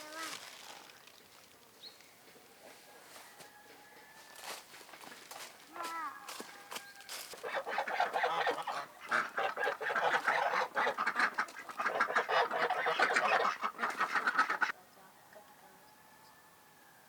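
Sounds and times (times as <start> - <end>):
flock of waterfowl honking and quacking: 7.4 - 14.8.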